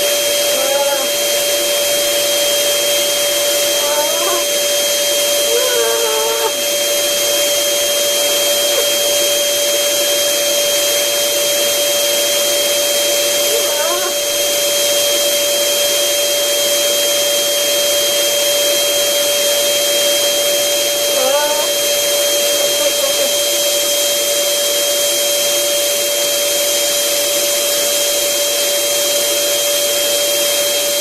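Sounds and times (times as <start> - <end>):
electric air blower whining: 0.0 - 31.0
brief high vocal sound: 5.4 - 6.6.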